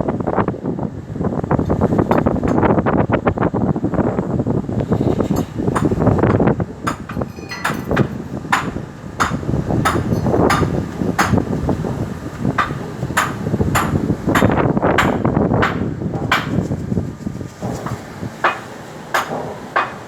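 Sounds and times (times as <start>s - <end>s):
ringing hammer blows: 6.9s - 11.4s.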